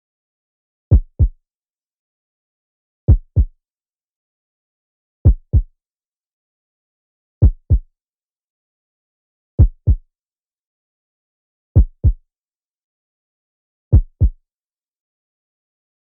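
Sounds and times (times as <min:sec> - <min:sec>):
heartbeat thumps: 0:00.9 - 0:01.4, 0:03.1 - 0:03.5, 0:05.3 - 0:05.7, 0:07.4 - 0:07.8, 0:09.6 - 0:10.0, 0:11.8 - 0:12.2, 0:13.9 - 0:14.4.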